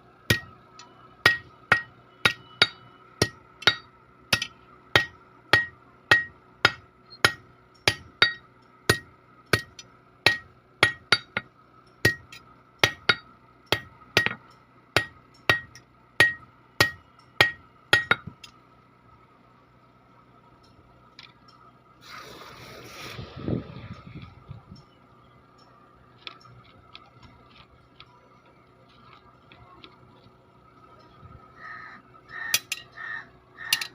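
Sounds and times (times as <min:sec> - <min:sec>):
hammer ringing on anvil: 0:00.3 - 0:00.5, 0:01.2 - 0:14.4, 0:15.0 - 0:18.3
rough noisy rustle: 0:22.0 - 0:24.6.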